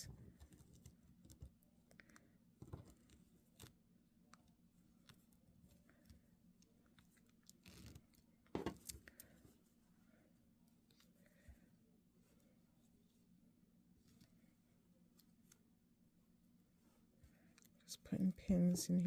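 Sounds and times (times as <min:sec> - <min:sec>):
low steady hum: 0:00.0 - 0:19.0
soft clicks and rustles: 0:13.9 - 0:15.8.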